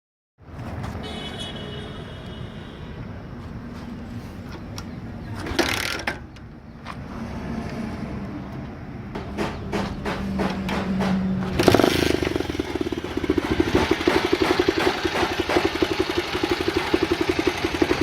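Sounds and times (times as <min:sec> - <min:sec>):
motorcycle engine idling: 0:11.6 - 0:18.0.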